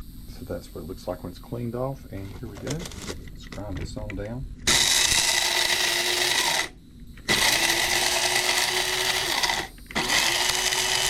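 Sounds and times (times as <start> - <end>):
blade coffee grinder whining: 4.7 - 11.0.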